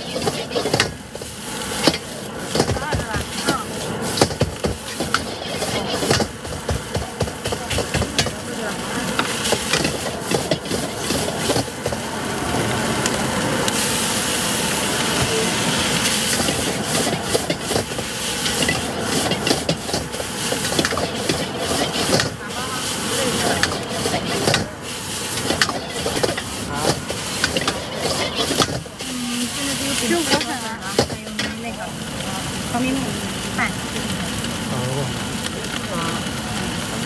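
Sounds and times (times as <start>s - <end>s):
utensils clattering: 0.0s - 1.0s, 23.2s - 31.6s
sizzling steam hiss: 0.0s - 37.0s.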